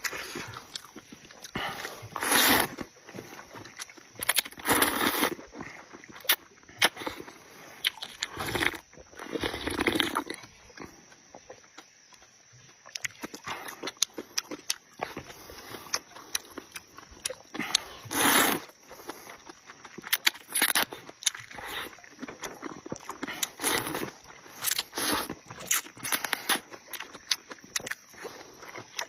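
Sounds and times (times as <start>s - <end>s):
wet chewing and lip-smacking: 0.0s - 29.0s
noodle slurping: 1.4s - 3.4s, 17.6s - 19.4s, 23.0s - 26.7s.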